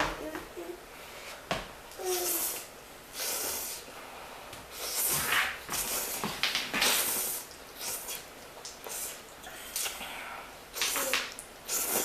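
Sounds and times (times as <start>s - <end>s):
noodles being slurped: 10.7s - 12.0s.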